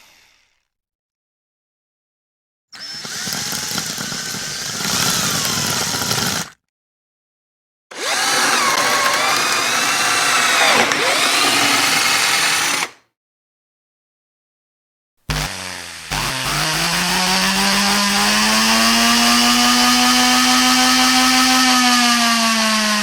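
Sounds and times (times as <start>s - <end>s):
electric drill motor whine: 2.8s - 6.5s, 7.9s - 10.5s, 15.3s - 23.0s.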